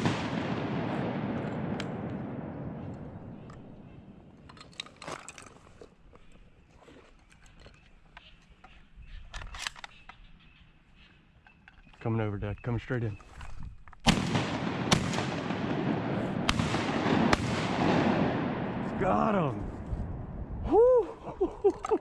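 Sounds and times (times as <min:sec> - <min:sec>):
shotgun blast echo: 0:00.0 - 0:04.0, 0:14.1 - 0:19.0.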